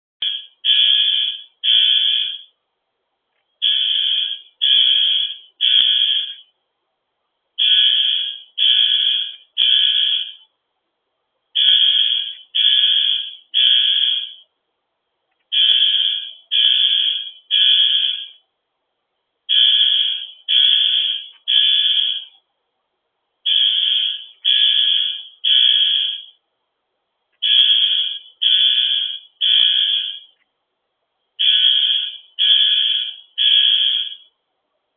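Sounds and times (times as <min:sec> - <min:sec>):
fire alarm horn buzzing: 0:00.2 - 0:02.5, 0:03.6 - 0:06.5, 0:07.6 - 0:10.5, 0:11.6 - 0:14.5, 0:15.5 - 0:18.4, 0:19.5 - 0:22.4, 0:23.5 - 0:26.4, 0:27.4 - 0:30.4, 0:31.4 - 0:34.3.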